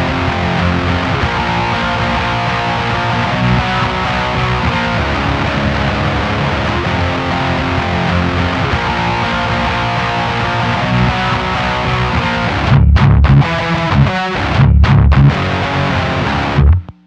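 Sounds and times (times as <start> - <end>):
distorted electric guitar riffing: 0.0 - 17.0.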